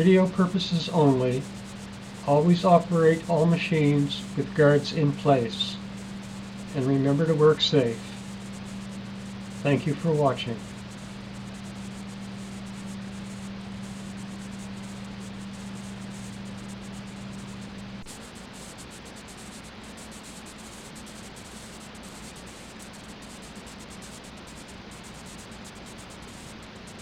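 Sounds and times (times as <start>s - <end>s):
low electrical hum: 0.0s - 27.0s
steady noise floor hiss: 0.0s - 27.0s.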